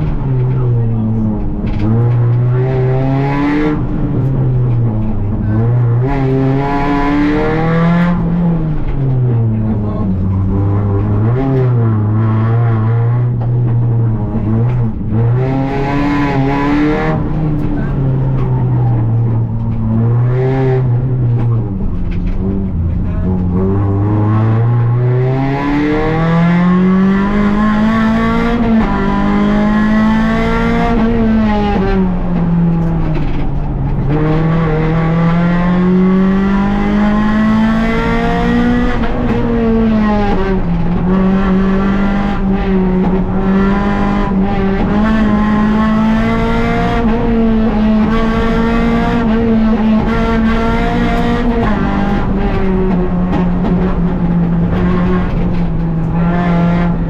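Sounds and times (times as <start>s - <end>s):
rally car engine revving: 0.0s - 57.0s.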